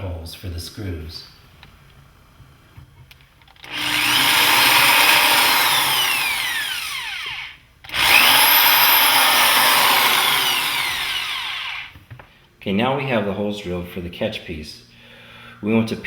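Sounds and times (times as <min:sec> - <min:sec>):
power drill boring into wood: 0:03.6 - 0:12.0.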